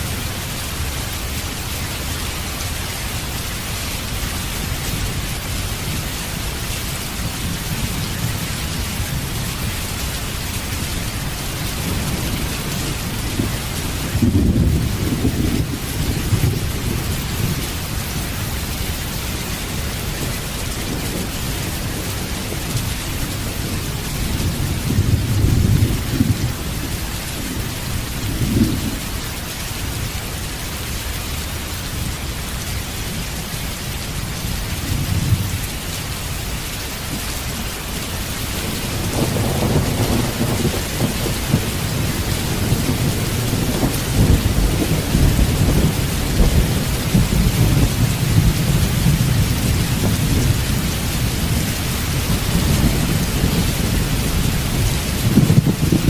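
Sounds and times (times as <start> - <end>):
steady rain: 0.0 - 56.0
rolling thunder: 4.0 - 29.2, 37.1 - 56.0.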